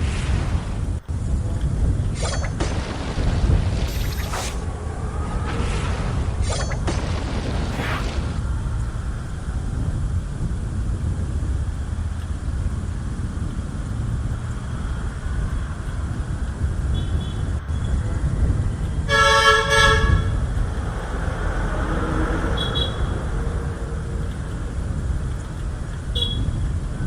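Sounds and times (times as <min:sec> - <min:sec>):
low traffic rumble: 0:00.0 - 0:27.0
vehicle horn toots: 0:19.1 - 0:20.4.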